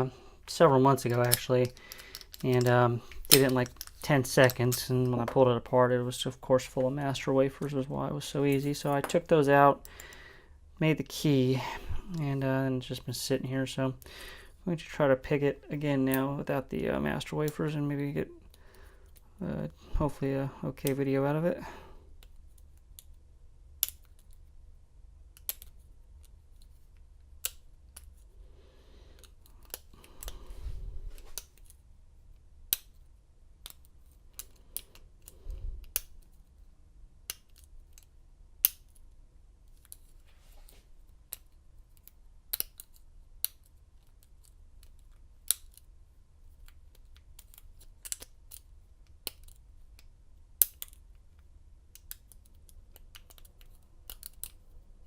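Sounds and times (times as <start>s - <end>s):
lock picks clicking in padlock: 1.1s - 2.6s.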